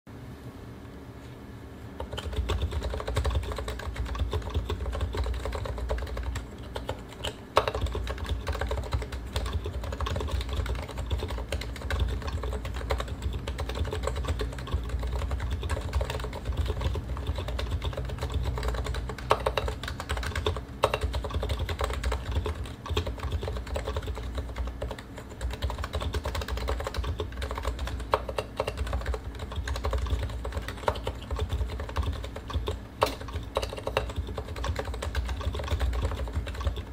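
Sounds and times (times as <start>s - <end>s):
fast keyboard typing: 2.0s - 36.9s.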